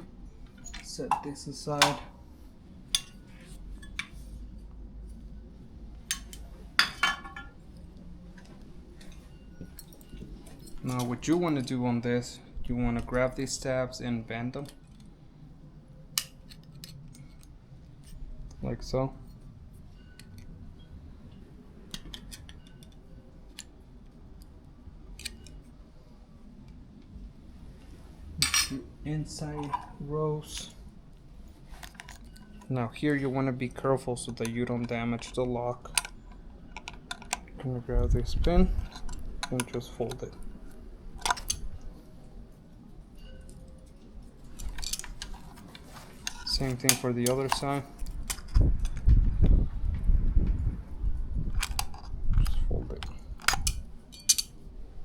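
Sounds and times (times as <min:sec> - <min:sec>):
metal lock parts clinking: 0:00.4 - 0:02.0, 0:09.0 - 0:11.8, 0:21.9 - 0:23.8, 0:25.1 - 0:25.7, 0:34.2 - 0:37.7, 0:38.7 - 0:41.9, 0:43.1 - 0:45.6, 0:46.2 - 0:49.1, 0:51.5 - 0:54.6.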